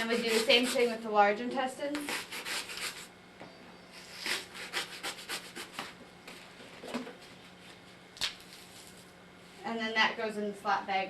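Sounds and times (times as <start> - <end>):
knife scraping cuts: 0.0 - 1.0, 1.9 - 3.1, 3.9 - 6.0.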